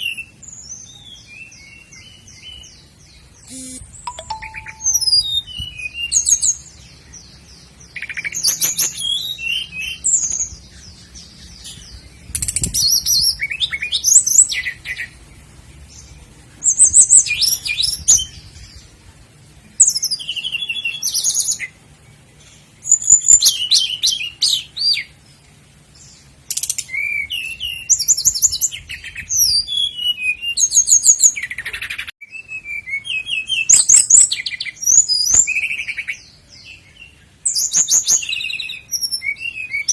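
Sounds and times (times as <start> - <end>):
flycatcher singing trills: 3.4 - 15.2.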